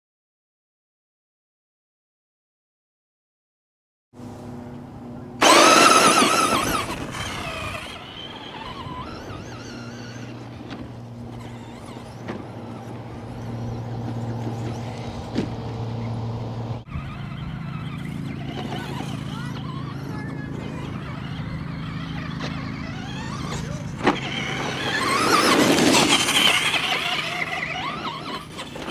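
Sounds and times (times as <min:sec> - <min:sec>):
distant vehicles droning: 0:04.2 - 0:28.9
toy car high-pitched whine: 0:05.4 - 0:15.3, 0:16.8 - 0:28.9.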